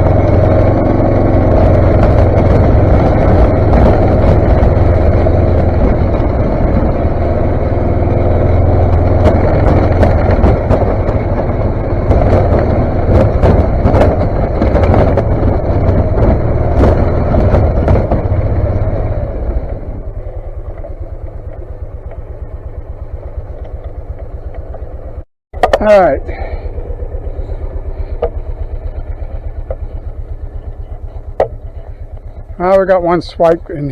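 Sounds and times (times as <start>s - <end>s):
snowplow engine running: 0.0s - 33.9s
clicks and clatter: 8.9s - 18.3s.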